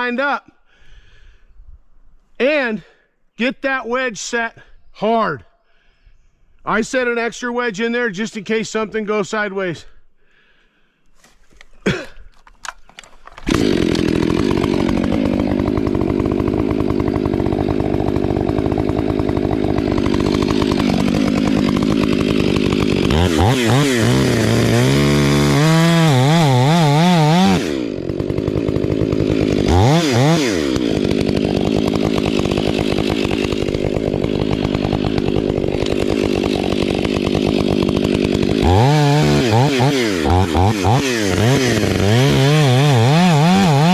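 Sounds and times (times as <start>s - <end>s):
chainsaw cutting wood: 11.1s - 43.9s.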